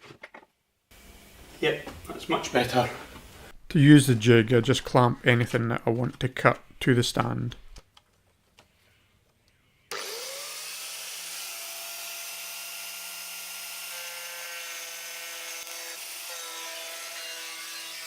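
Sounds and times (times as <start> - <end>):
angle grinder motor whine: 9.9 - 14.2.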